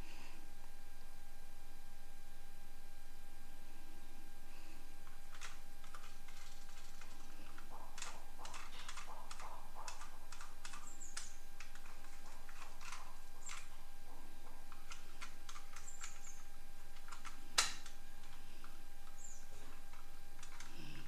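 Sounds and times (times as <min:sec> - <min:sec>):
small hard objects clicking: 0:05.0 - 0:21.0.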